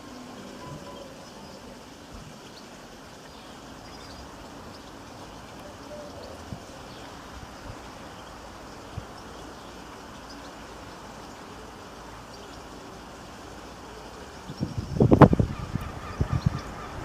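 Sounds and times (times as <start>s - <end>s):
background hiss: 0.0s - 17.0s
geese honking: 15.4s - 17.0s.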